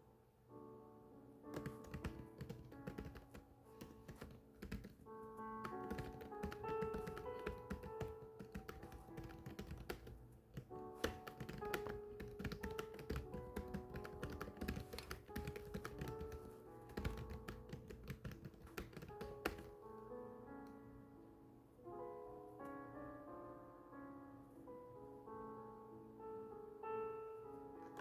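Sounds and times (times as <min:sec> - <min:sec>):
soft background music: 0:00.0 - 0:28.0
fast typing key clicks: 0:01.6 - 0:05.0, 0:05.6 - 0:19.7.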